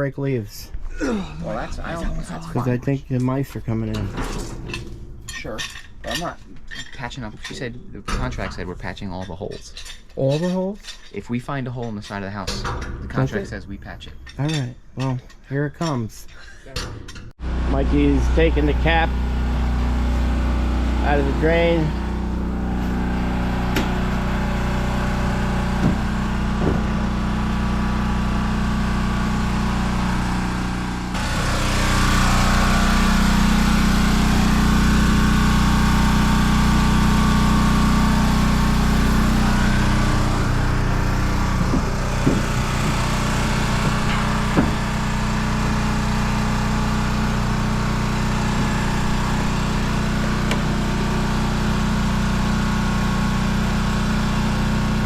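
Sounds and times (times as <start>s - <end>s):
pump engine running: 17.4s - 55.0s.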